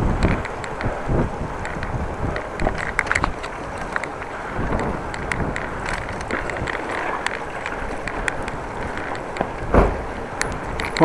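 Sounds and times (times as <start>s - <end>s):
small clicks and rattles: 0.0s - 11.0s
wind buffeting microphone: 0.0s - 11.0s.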